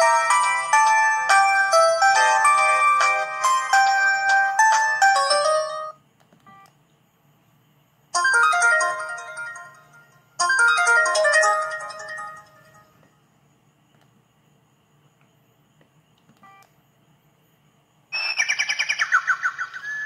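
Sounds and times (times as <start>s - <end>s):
ringtone melody on phone speaker: 0.0s - 6.0s, 8.2s - 12.9s.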